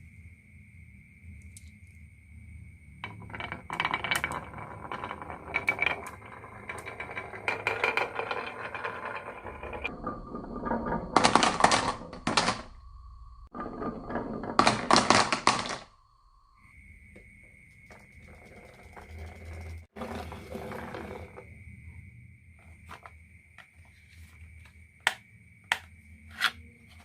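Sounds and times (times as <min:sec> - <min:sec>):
marbles clattering down wooden run: 0:03.0 - 0:12.7, 0:13.5 - 0:15.9, 0:17.9 - 0:21.4.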